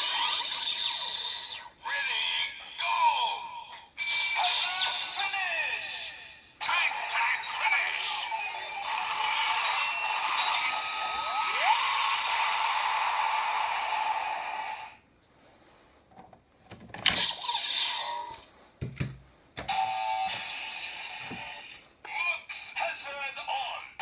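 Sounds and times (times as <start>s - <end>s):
toy electronic music and effects: 0.0s - 3.3s, 4.0s - 14.7s, 17.2s - 18.4s.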